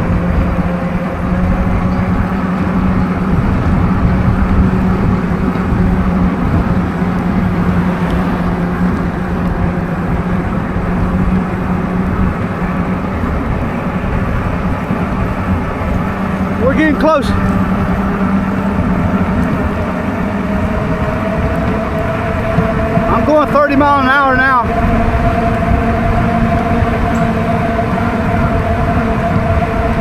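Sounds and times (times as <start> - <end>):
electric bike motor whining: 0.0 - 30.0
wind noise on microphone: 0.0 - 30.0.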